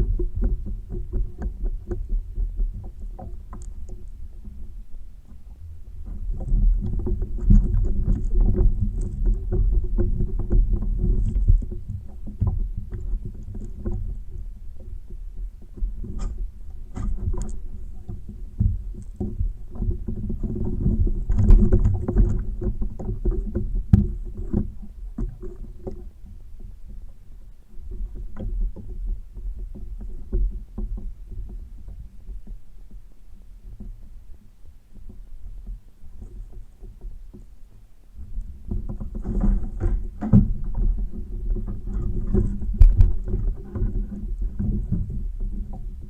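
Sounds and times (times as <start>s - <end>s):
kayak hull thumps and knocks: 0.0s - 4.7s, 6.0s - 27.2s, 35.0s - 46.0s.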